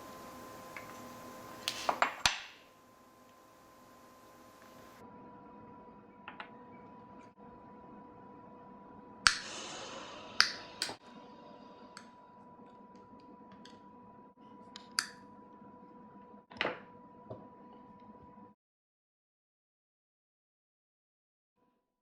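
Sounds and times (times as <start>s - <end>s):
faint steady hum: 0.0s - 14.3s.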